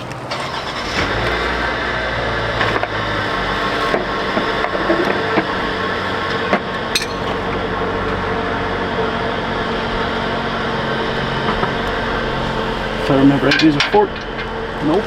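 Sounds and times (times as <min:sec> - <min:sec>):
metal hand tools clinking: 0:07.0 - 0:07.5.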